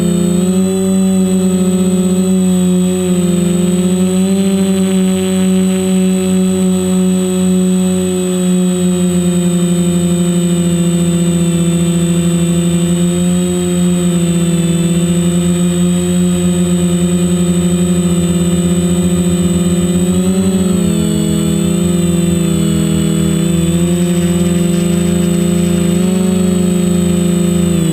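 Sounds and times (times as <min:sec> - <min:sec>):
quadcopter motors droning: 0:00.0 - 0:27.9
thin high whine: 0:16.6 - 0:27.9.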